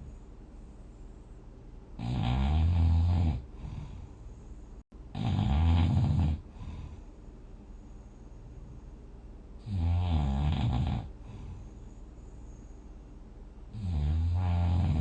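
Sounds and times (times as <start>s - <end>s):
person snoring: 2.0s - 4.2s, 5.1s - 7.1s, 9.6s - 11.7s, 13.7s - 15.0s.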